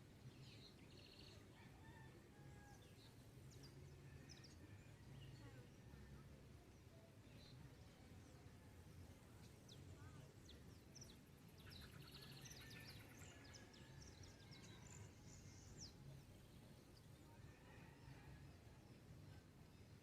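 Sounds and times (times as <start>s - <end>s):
birds chirping and trilling: 10.4s - 16.7s.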